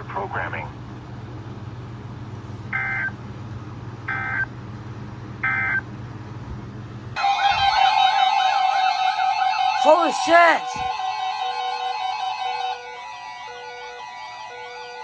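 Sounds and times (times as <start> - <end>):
loud steady tones: 7.2 - 15.0.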